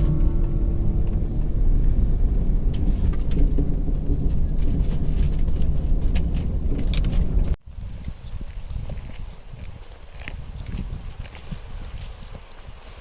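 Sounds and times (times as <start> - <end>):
rattling and jangling: 0.0 - 7.6
vehicle driving rumble: 0.0 - 7.6.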